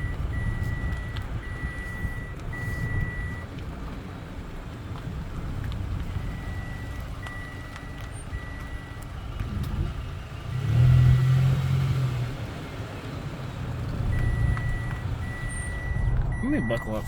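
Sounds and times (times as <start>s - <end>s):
seatbelt warning chime beeps: 0.0s - 3.5s, 6.1s - 9.1s, 14.1s - 17.0s
car running heard from inside: 0.0s - 17.0s.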